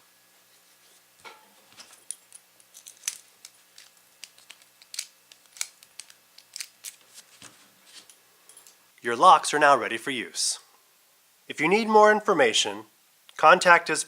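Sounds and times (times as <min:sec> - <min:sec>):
lock metal parts clicking: 0:01.8 - 0:07.0.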